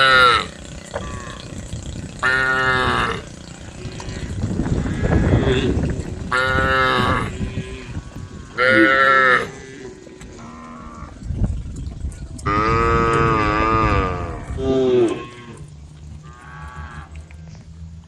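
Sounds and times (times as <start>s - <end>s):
cattle mooing: 0.0s - 11.2s, 12.4s - 17.6s
low rumbling noise: 0.0s - 18.0s.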